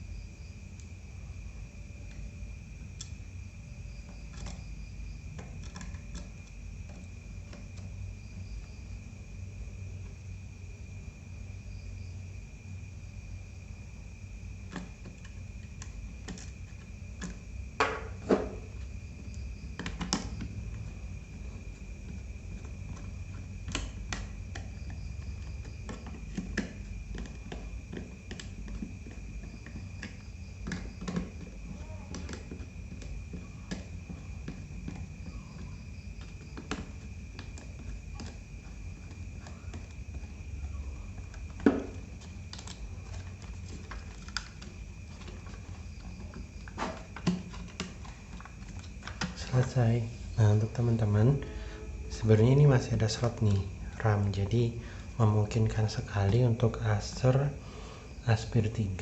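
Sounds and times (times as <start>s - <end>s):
crickets chirring: 0.0s - 59.0s
laptop parts clicking and tapping: 3.9s - 8.0s, 14.6s - 49.7s
faint high whine: 49.2s - 56.6s.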